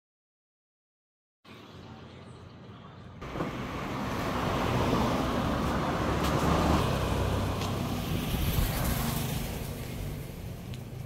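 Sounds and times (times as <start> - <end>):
tyre and road noise: 1.5 - 11.0.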